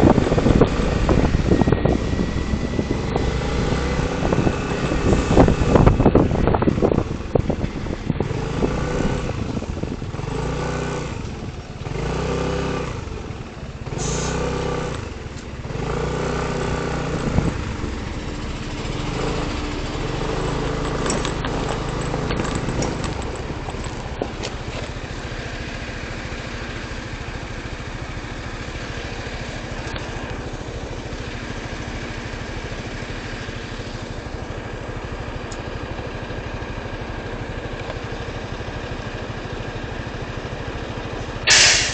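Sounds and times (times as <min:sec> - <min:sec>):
engine revving: 0:00.0 - 0:35.6, 0:36.2 - 0:41.9.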